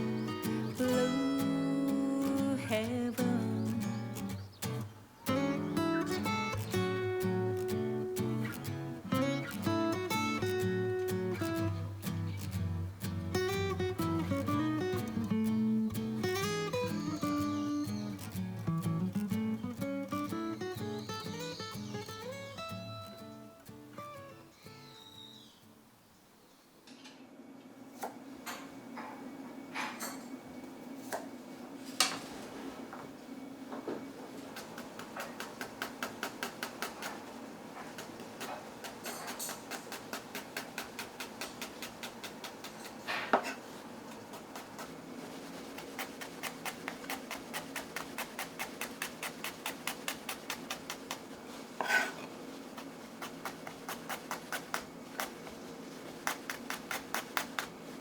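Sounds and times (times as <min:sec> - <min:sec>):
knife chopping on cutting board: 0:34.5 - 0:43.6, 0:45.7 - 0:51.2, 0:51.8 - 0:55.4.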